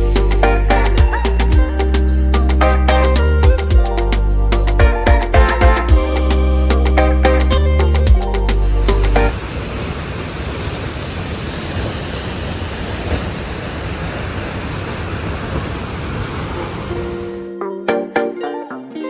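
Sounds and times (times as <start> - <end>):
plucked-string music: 0.0 - 9.3, 17.4 - 19.0
steady rushing noise: 0.1 - 17.4.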